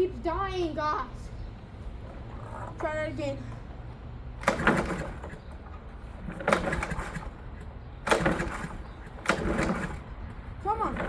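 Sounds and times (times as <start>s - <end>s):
lawn mower engine cranking: 4.4s - 11.0s.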